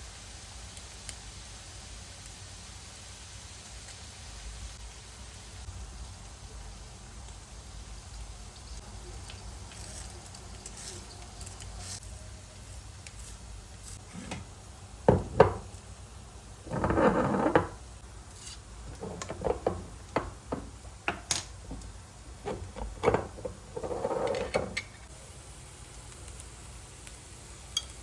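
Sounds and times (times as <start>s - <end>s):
rustling scrapes: 16.7s - 20.3s, 22.4s - 24.8s
cookware clattering: 18.9s - 21.5s, 22.4s - 25.1s.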